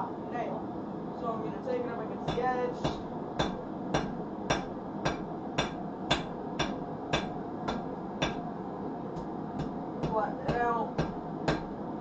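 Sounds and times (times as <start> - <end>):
hammer striking iron on anvil: 2.3 - 8.4, 9.6 - 11.7.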